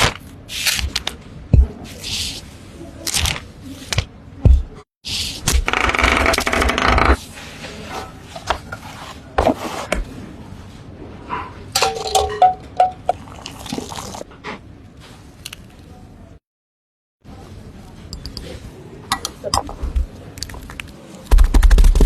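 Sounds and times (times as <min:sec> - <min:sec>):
utensils clinking against dishes: 0:11.7 - 0:13.2.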